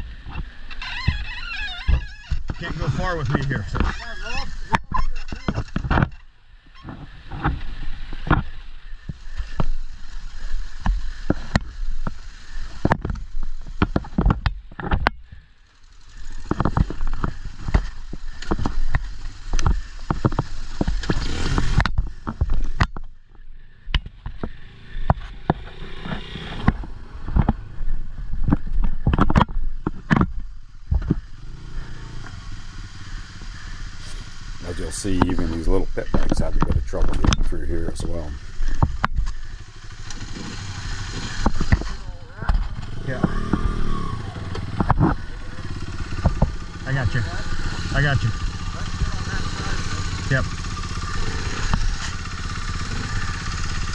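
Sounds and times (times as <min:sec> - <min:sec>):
motorbike engine: 0:00.0 - 0:53.9
knocks and scrapes: 0:00.3 - 0:09.8.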